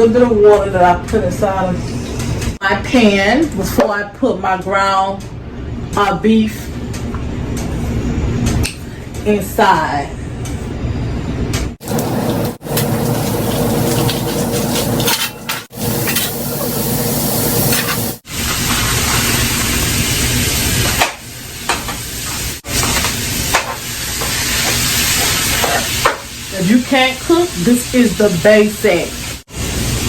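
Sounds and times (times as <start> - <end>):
meat sizzling in a pan: 11.8 - 15.1, 15.7 - 30.0.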